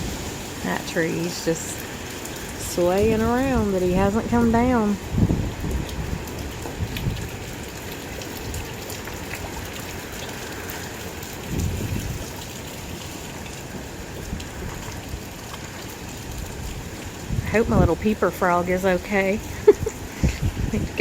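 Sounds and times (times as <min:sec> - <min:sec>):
gusty wind rumble: 0:00.0 - 0:21.0
rain pattering: 0:00.0 - 0:21.0.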